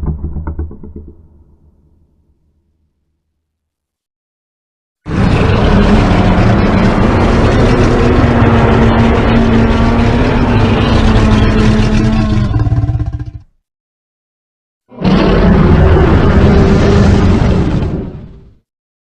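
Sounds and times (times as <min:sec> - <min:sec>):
giant monster roar: 0:05.1 - 0:13.5, 0:14.9 - 0:18.4.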